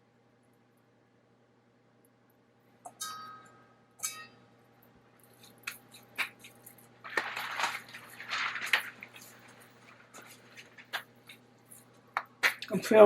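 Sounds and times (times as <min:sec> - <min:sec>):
rustling and scraping: 0:05.2 - 0:12.6.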